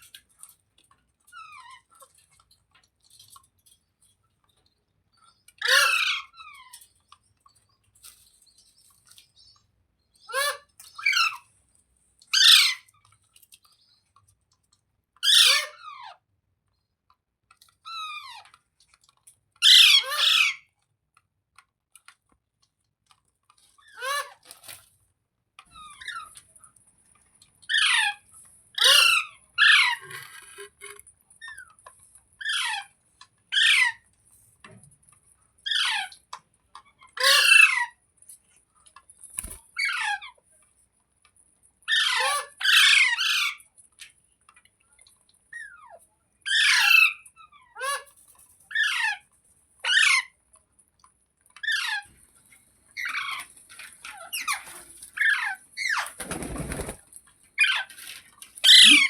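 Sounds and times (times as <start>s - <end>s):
parakeet squawking: 58.6s - 59.0s.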